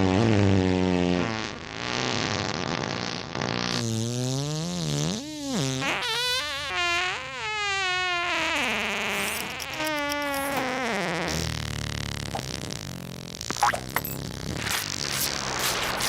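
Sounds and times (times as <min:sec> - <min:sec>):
buzzy cartoon farts: 0:00.0 - 0:16.0
hissing blast: 0:13.5 - 0:16.0.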